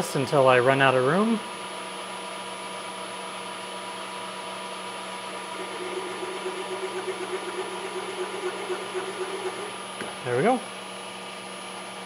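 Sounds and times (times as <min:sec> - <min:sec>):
milling machine motor hum: 0:04.8 - 0:12.0.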